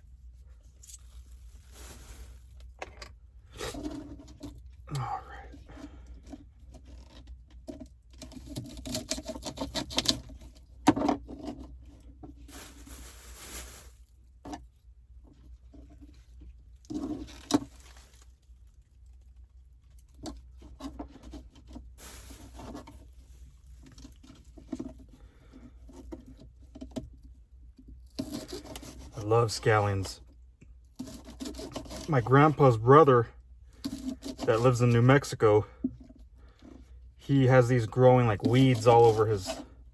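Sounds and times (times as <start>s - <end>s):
short rustling: 0.6s - 2.8s.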